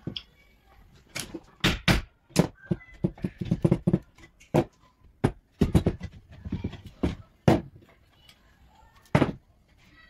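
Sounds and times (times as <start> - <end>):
knocks on wooden furniture: 1.6 - 7.7.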